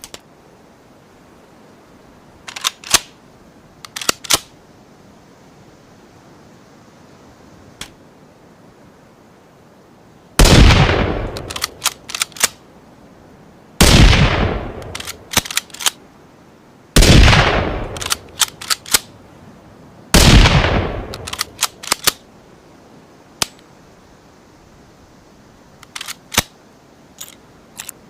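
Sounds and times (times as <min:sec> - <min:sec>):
rifle bolt clicking: 0:03.9 - 0:04.5, 0:11.3 - 0:12.6, 0:14.8 - 0:16.0, 0:17.9 - 0:19.1, 0:21.1 - 0:22.2
rifle shots echoing: 0:10.4 - 0:11.8, 0:13.8 - 0:15.6, 0:17.0 - 0:19.0, 0:20.2 - 0:22.1.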